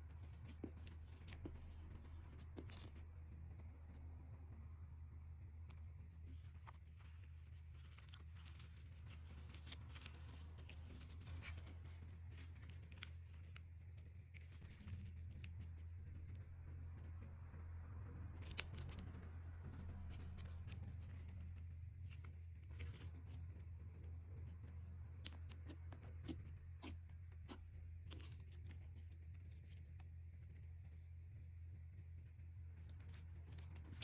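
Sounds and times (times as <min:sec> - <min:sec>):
low steady hum: 0:00.0 - 0:34.0.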